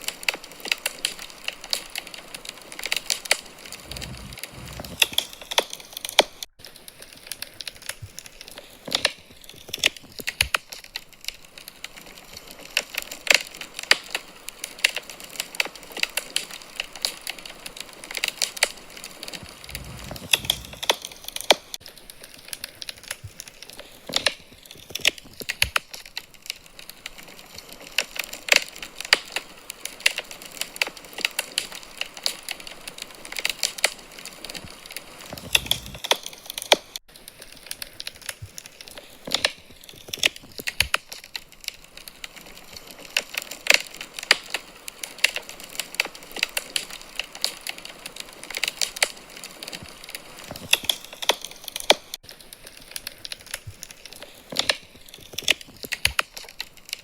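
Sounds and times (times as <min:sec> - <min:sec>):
wood fire crackling: 0:00.0 - 0:57.0
whoosh of flame: 0:03.2 - 0:05.8, 0:19.2 - 0:21.8, 0:35.2 - 0:36.2.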